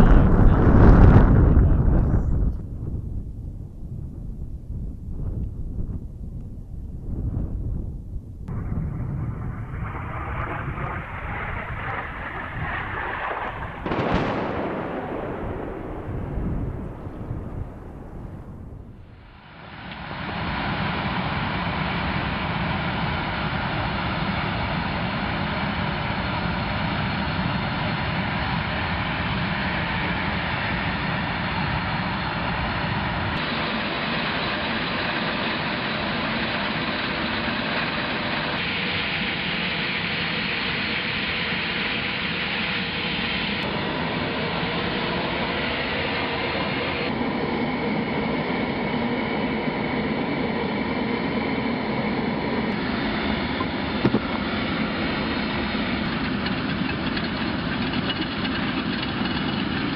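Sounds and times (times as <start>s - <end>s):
loud mechanical machinery noise: 19.4s - 59.9s.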